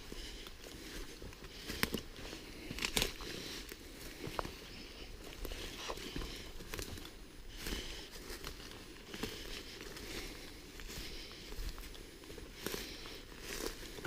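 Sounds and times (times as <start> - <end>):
footsteps through undergrowth: 0.0 - 14.0
leaves and brush rustling: 0.0 - 14.0
twigs snapping: 2.6 - 3.8.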